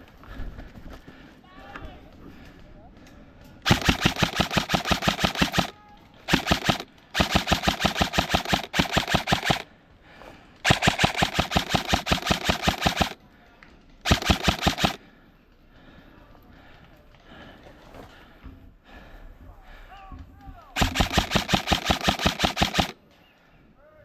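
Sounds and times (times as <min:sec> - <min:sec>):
airsoft rifle firing bursts: 0:03.6 - 0:09.7, 0:10.6 - 0:13.2, 0:14.0 - 0:15.1, 0:20.7 - 0:23.0.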